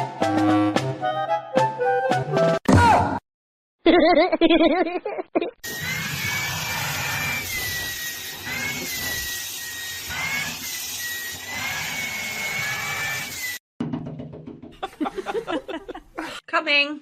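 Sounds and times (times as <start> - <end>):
small electric motor whining: 5.6 - 13.6.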